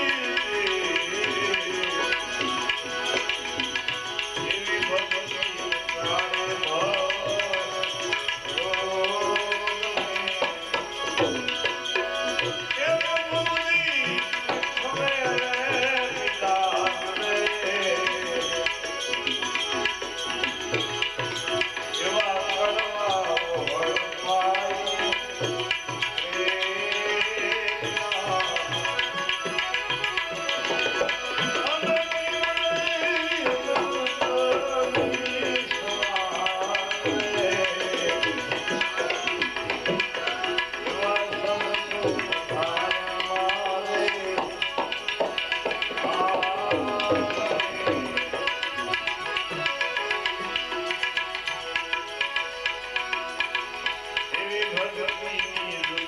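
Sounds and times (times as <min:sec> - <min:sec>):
tabla drumming: 0:00.0 - 0:56.0.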